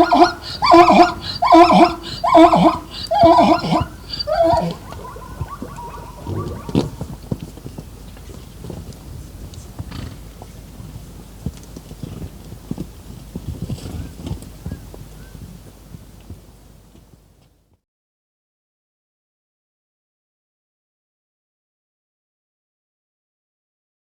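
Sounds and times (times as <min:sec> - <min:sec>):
hooves on ground: 0:00.0 - 0:17.6.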